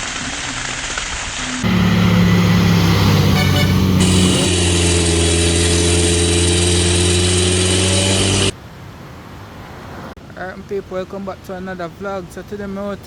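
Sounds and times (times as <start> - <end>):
motor vehicle engine running: 1.6 - 8.6.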